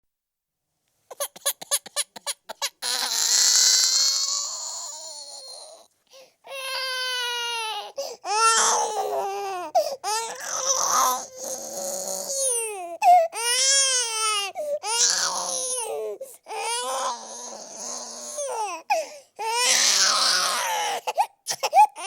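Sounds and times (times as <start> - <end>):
baby crying: 1.1 - 22.0
baby gasping for breath: 8.0 - 8.3, 9.7 - 10.0, 18.9 - 19.4.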